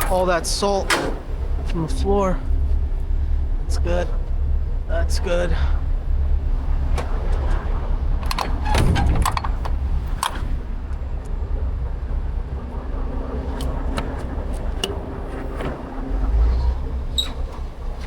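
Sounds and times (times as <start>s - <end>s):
truck engine idling: 0.0s - 18.0s
sharp metallic clicks and knocks: 8.2s - 10.6s.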